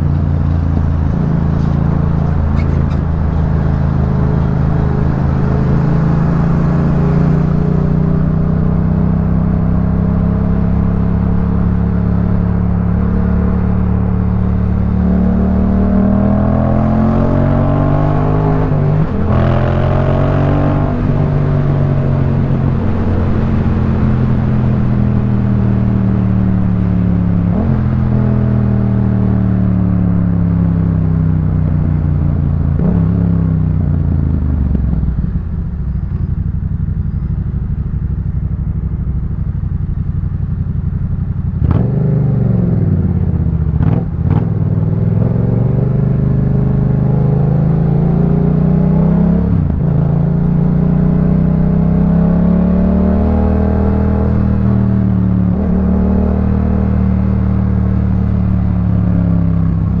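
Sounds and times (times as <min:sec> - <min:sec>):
exhaust pops: 0:00.0 - 0:05.1
motorcycle engine under load: 0:00.0 - 0:15.0, 0:28.9 - 0:45.8.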